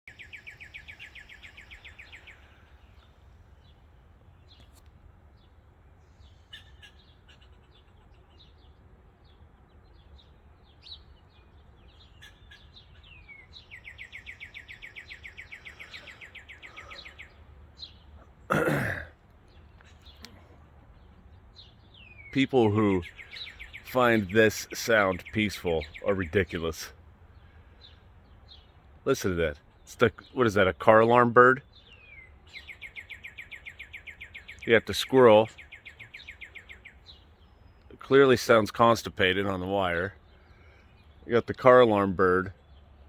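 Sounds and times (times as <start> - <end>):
songbirds trilling and chirping: 0.0 - 43.0
throaty throat-clearing noise: 18.5 - 19.2.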